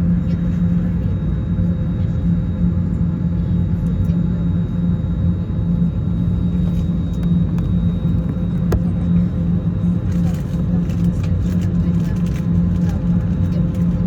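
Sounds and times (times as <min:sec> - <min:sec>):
pulsing hum: 0:00.0 - 0:11.0
airliner cabin rumble: 0:00.0 - 0:14.0.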